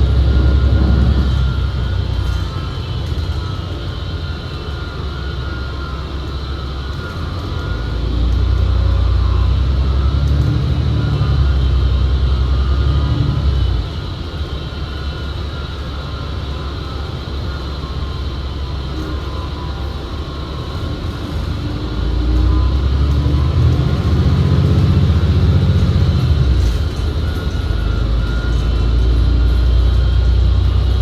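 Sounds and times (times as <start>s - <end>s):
bus drivetrain rumble: 0.0s - 31.0s
high transmission whine: 0.0s - 31.0s.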